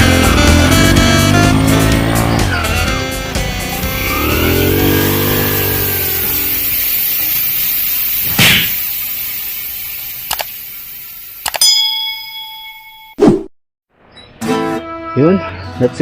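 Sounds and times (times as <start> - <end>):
small motorcycle engine revving: 0.0 - 11.4
sharp clicks: 10.2 - 10.6, 11.4 - 11.7.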